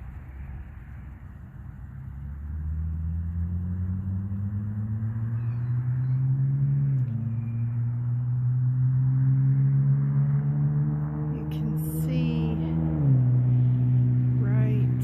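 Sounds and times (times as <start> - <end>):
engine hum: 0.0 - 15.0.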